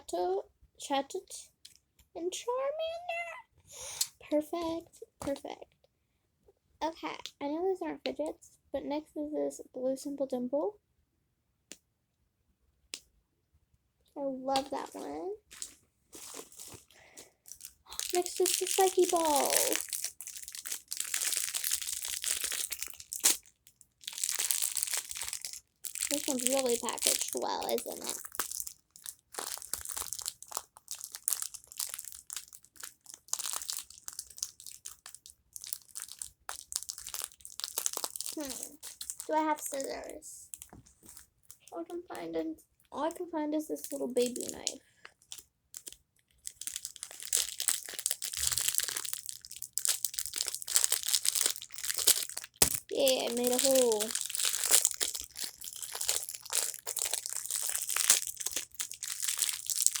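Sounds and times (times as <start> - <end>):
plastic packaging crinkling: 14.5 - 41.7, 43.8 - 60.0.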